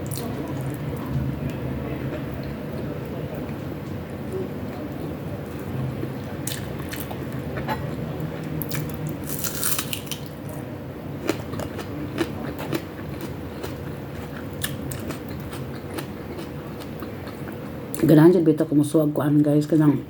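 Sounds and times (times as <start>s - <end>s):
crunchy crackling: 8.6s - 10.6s
close-miked chewing food: 11.2s - 18.0s.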